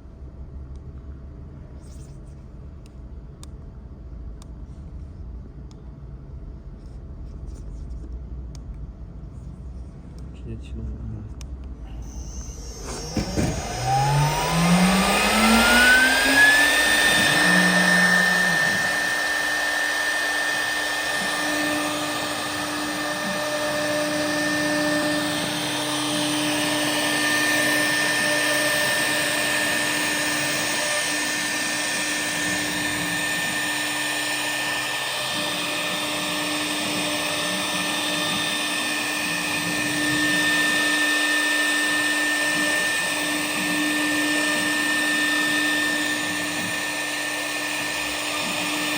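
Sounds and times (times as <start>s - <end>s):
router spindle motor whine: 12.0s - 48.9s.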